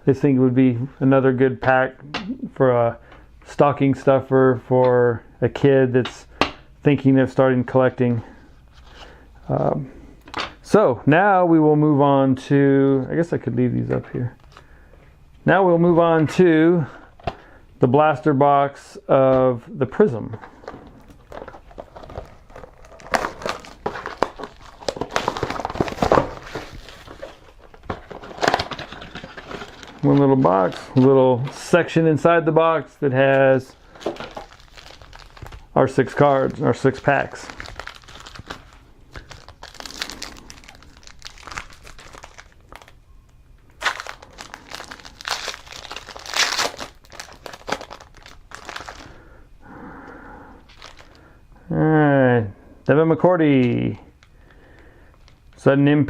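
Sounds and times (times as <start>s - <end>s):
cardboard rustling and tearing: 20.4s - 31.1s, 33.9s - 42.9s, 43.8s - 49.1s.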